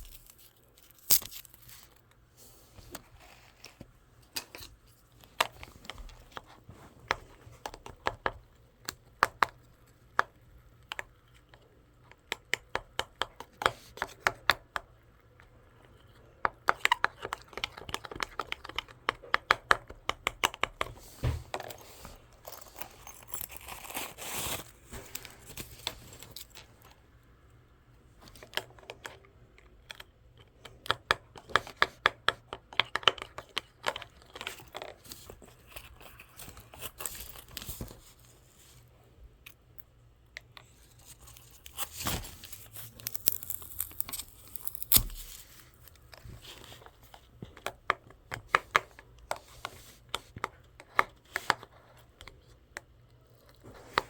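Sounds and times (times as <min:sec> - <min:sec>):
crinkling and rustling: 0:00.0 - 0:07.9, 0:20.9 - 0:27.0, 0:33.1 - 0:39.7, 0:40.3 - 0:54.0.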